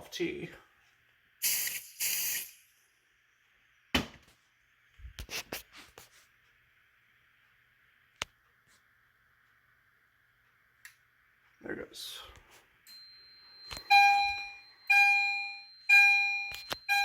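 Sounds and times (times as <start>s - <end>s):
aerosol spray hissing: 1.4s - 2.7s.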